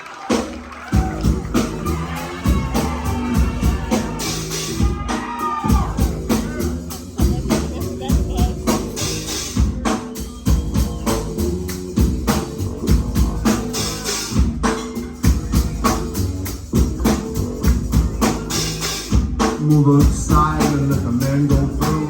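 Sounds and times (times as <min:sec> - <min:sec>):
drum kit beat: 0:00.0 - 0:22.0
bass notes: 0:00.4 - 0:22.0.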